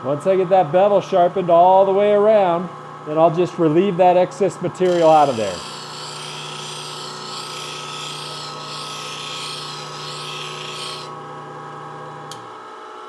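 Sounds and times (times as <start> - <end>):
steel grinding against wheel: 4.8 - 11.2
bench grinder motor humming: 4.8 - 11.3.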